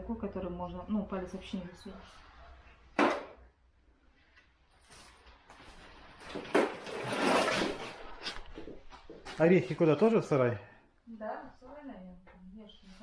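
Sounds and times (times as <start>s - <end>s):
scraping slide with knocks: 6.4s - 8.6s.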